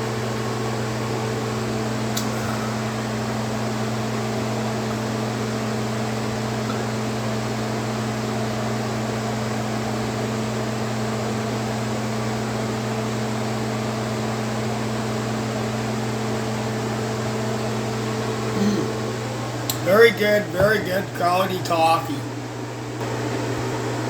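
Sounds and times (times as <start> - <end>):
appliance electric hum: 0.0 - 24.0
fan-like hiss: 1.4 - 8.7, 17.0 - 24.0.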